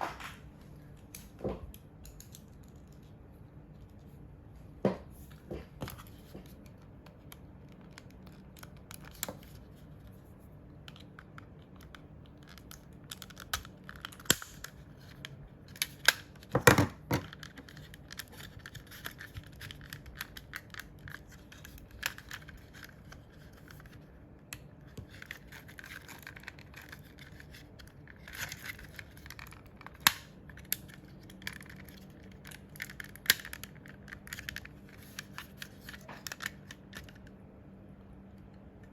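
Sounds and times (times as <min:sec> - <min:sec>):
plastic clicks and scrapes: 0:10.8 - 0:37.4.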